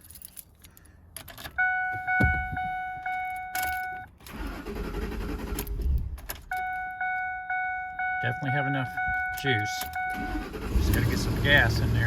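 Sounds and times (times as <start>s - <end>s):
keys jingling: 0.0s - 1.6s, 3.2s - 4.0s
ignition warning chime: 1.5s - 4.6s, 6.5s - 10.7s
starter cranking engine: 4.3s - 6.0s.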